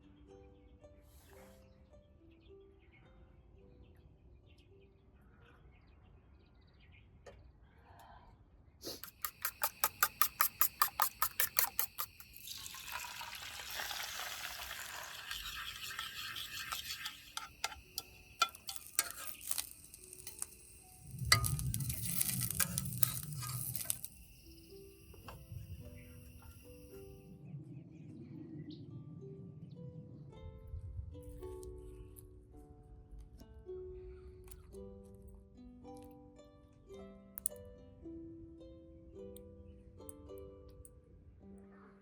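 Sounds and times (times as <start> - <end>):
steady hiss: 8.8 - 27.2
fast even clicks: 9.0 - 12.5
low rumble: 27.0 - 32.3.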